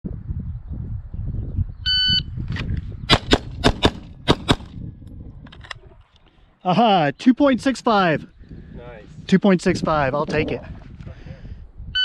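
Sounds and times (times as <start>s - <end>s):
loud gunshots: 3.1s - 4.7s.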